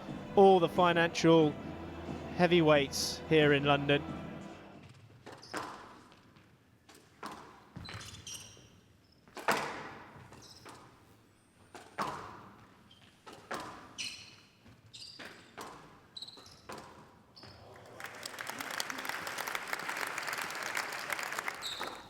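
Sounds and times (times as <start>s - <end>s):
squash ball hitting rackets and walls: 4.8s - 8.6s, 9.2s - 11.0s, 11.6s - 17.3s
shoes squeaking on court floor: 4.8s - 17.7s, 21.5s - 22.0s.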